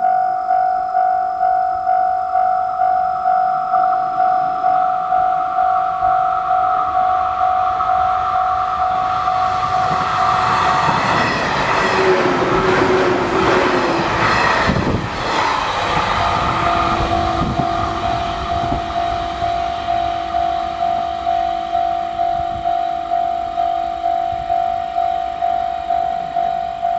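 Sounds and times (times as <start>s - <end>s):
level crossing warning bell ringing: 0.0s - 13.6s, 16.0s - 26.9s
electric trains rushing past: 0.0s - 26.9s.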